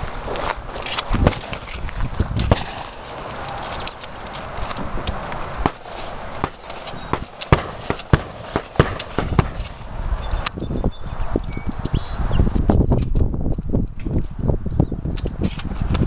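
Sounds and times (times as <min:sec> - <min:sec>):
footsteps walking: 0:00.0 - 0:09.9.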